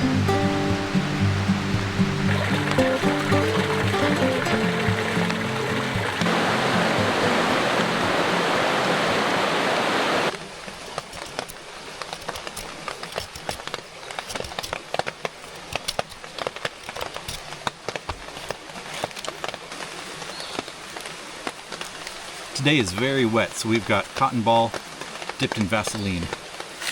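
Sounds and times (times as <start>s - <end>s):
raindrops ticking on hard surface: 0.0s - 8.2s
rushing water: 0.0s - 26.9s.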